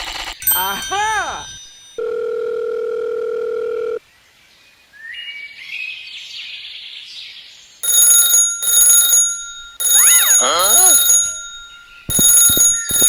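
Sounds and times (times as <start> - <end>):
bell ringing in pulses: 7.8 - 13.0.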